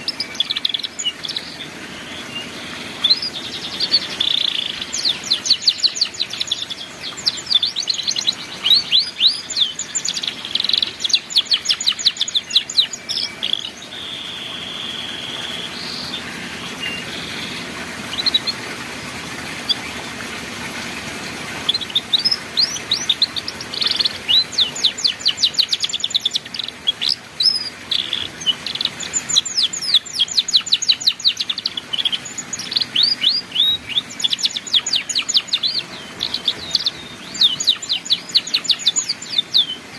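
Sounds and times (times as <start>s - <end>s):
canary singing chirps and trills: 0.0s - 39.9s
canary whistle: 10.6s - 16.2s.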